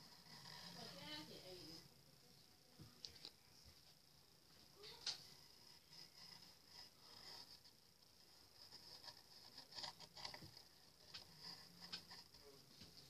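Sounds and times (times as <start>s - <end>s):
faint steady high hiss: 0.0s - 13.0s
faint small taps and scrapes: 9.7s - 13.0s.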